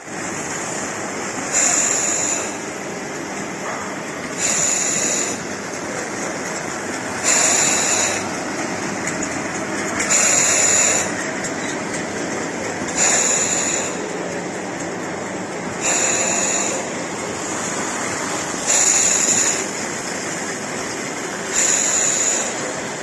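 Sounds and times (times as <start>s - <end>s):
washing machine mechanical noise: 0.0s - 23.0s.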